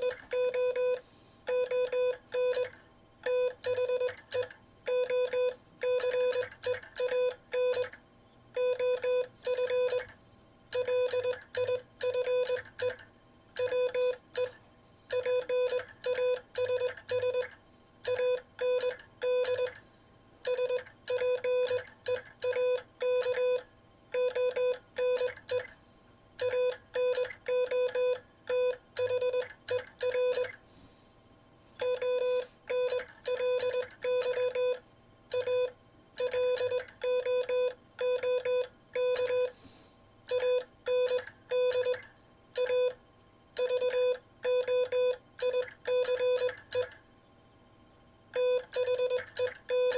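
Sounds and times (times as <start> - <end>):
morse code sidetone beeping: 48.4 - 49.9.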